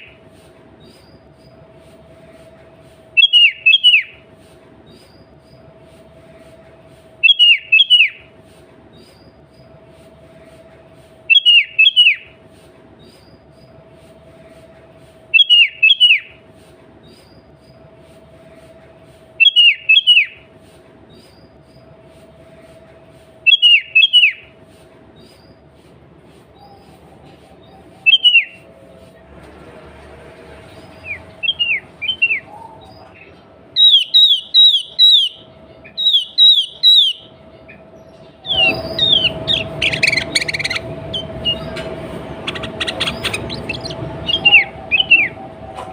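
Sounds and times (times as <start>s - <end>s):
bird whistling downward notes: 3.2s - 4.2s, 7.2s - 8.2s, 11.3s - 12.3s, 15.3s - 16.3s, 19.4s - 20.4s, 23.4s - 24.4s, 28.0s - 28.6s, 31.0s - 33.1s, 33.8s - 37.4s, 38.4s - 45.4s
steady low hum: 24.4s - 45.9s.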